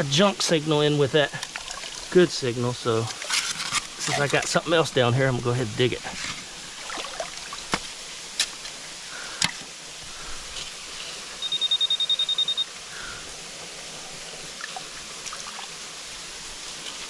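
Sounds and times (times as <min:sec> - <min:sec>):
creek water rushing: 0:00.0 - 0:11.5, 0:12.6 - 0:17.0
pinpointer short high beeps: 0:11.4 - 0:12.7.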